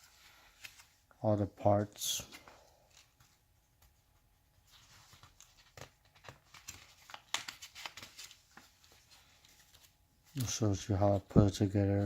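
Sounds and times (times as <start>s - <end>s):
paper rustling: 0.0s - 1.1s, 4.6s - 12.0s.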